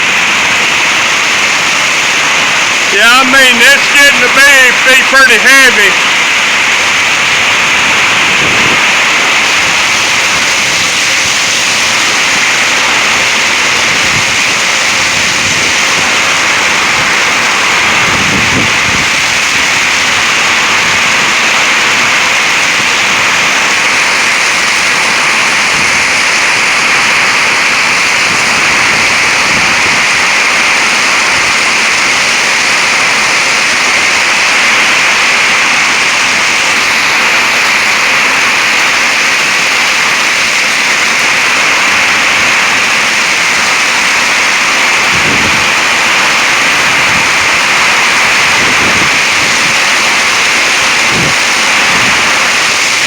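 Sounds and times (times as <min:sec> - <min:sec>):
heavy rain hiss: 0:00.0 - 0:53.0.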